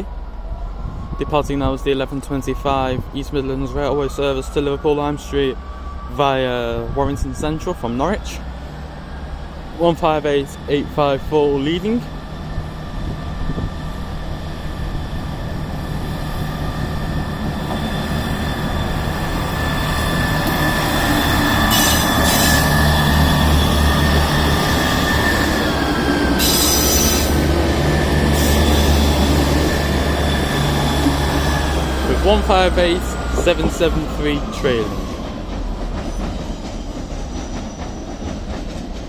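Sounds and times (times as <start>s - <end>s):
diesel train engines rumbling: 0.0s - 39.0s
wheel squeal: 15.8s - 27.4s, 36.1s - 38.5s.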